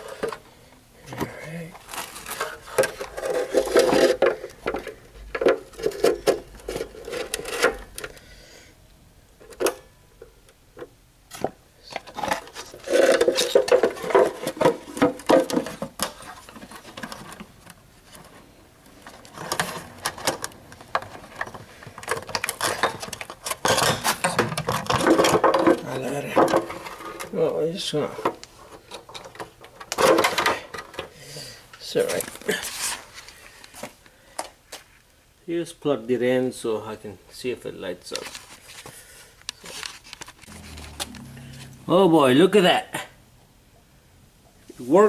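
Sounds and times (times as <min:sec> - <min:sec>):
plastic parts clicking and rattling: 0:01.9 - 0:08.2, 0:11.3 - 0:27.4, 0:28.2 - 0:31.1.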